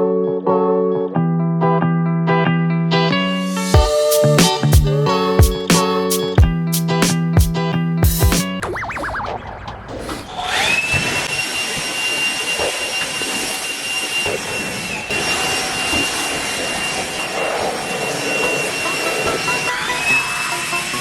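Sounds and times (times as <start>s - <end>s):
rushing noise: 8.6s - 21.0s
high-pitched motor whine: 10.4s - 21.0s.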